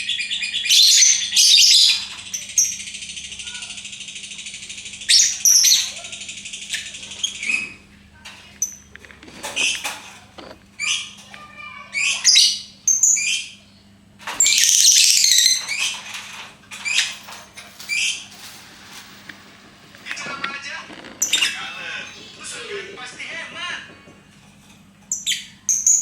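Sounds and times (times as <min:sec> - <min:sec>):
bird chirping and squawking: 0:11.9 - 0:13.7, 0:14.4 - 0:23.9.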